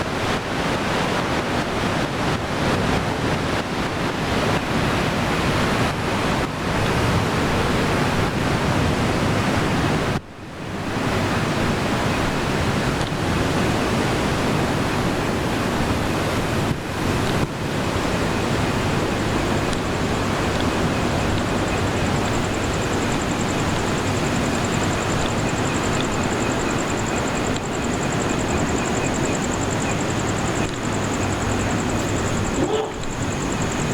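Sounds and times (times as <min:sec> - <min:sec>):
sea waves washing on shore: 0:00.0 - 0:33.9
high pulsing insect trill: 0:18.4 - 0:33.9.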